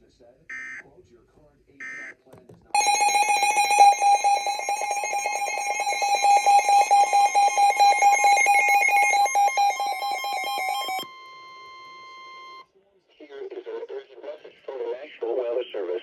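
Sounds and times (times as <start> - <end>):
rapidly pulsing alarm beep: 2.8 - 11.1
steady alert tone: 2.8 - 11.1.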